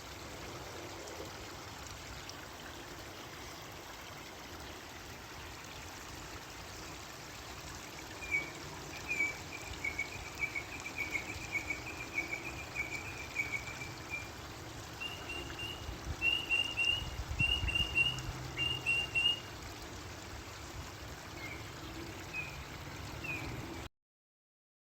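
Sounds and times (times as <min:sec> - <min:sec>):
running water: 0:00.0 - 0:23.9
bird chirping: 0:08.2 - 0:14.3, 0:15.0 - 0:19.4, 0:21.4 - 0:22.6.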